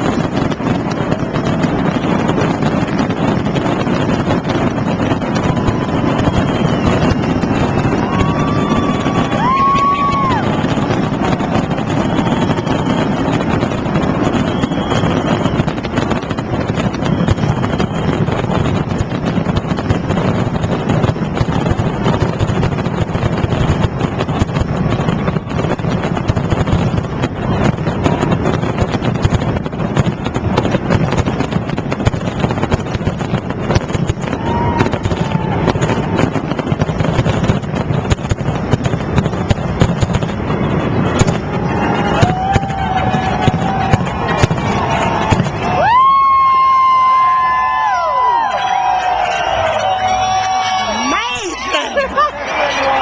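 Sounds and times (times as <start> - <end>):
crowd noise: 0.0 - 53.0
fireworks crackling and banging: 0.0 - 53.0
fireworks whistles: 0.0 - 53.0
wind buffeting microphone: 0.0 - 53.0.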